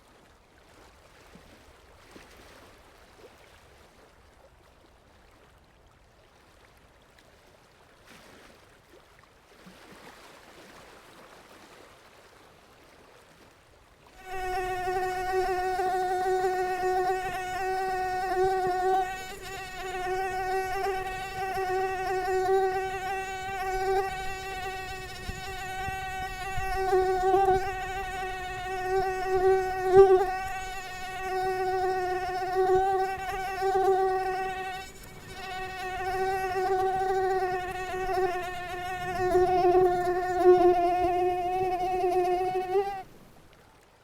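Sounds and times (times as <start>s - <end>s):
mosquito buzzing: 14.2s - 43.1s.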